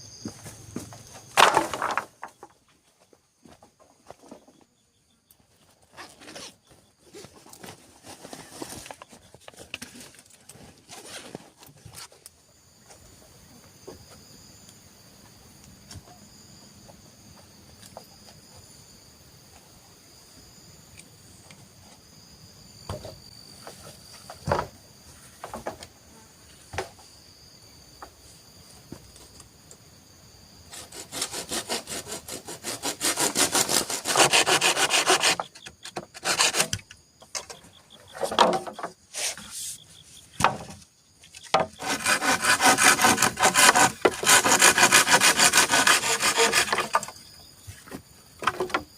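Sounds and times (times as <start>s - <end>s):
insects buzzing: 0.0s - 48.9s.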